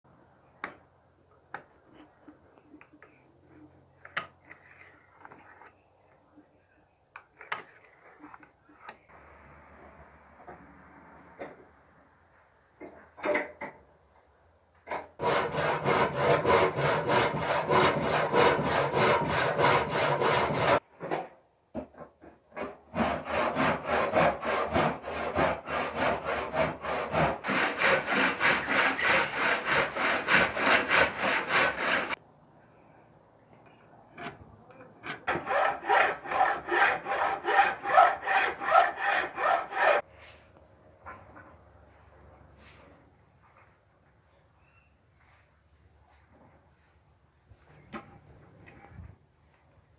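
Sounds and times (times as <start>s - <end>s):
saw cutting wood: 15.2s - 20.8s, 22.6s - 32.2s, 35.2s - 40.0s.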